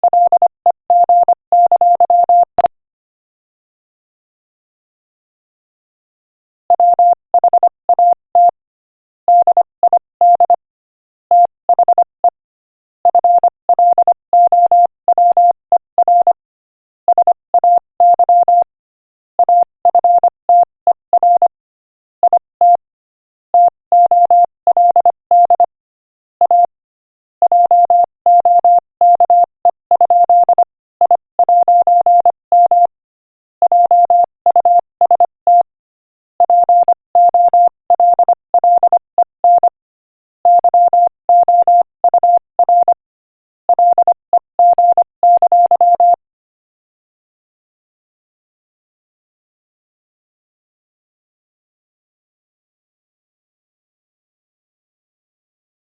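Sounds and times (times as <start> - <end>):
morse code beeps: 0.0 - 2.7, 6.8 - 8.6, 9.3 - 10.6, 11.3 - 12.4, 13.1 - 16.4, 17.1 - 18.7, 19.4 - 21.5, 22.2 - 22.8, 23.6 - 25.7, 26.4 - 26.7, 27.4 - 32.9, 33.6 - 35.7, 36.4 - 39.8, 40.4 - 43.0, 43.7 - 46.2.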